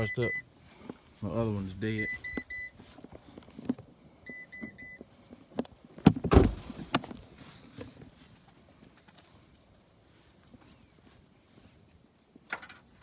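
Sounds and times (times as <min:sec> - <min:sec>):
sharp knocks and clunks: 0:06.0 - 0:07.1.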